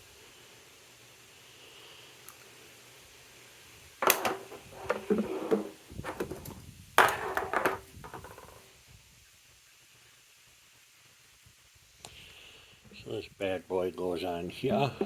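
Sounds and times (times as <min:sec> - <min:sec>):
metal tools clattering on a bench: 0:04.0 - 0:08.6.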